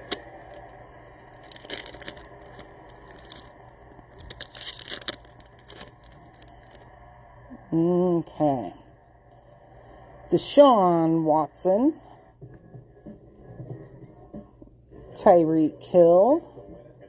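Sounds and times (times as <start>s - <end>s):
cards rustling: 0.0s - 6.8s
foil wrapper tearing: 1.3s - 6.8s.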